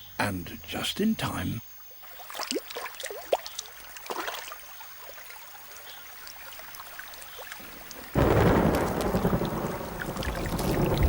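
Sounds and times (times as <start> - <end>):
faint drips: 1.8 - 11.0
heavy rain: 7.6 - 11.0
thunder: 8.1 - 11.0.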